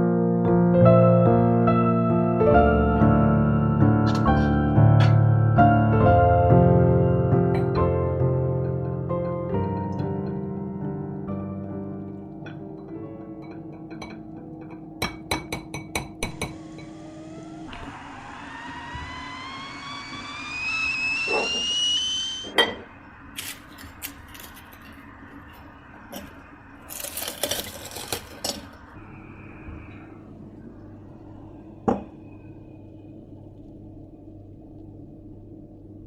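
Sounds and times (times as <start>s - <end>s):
crockery clinking: 12.5s - 16.5s.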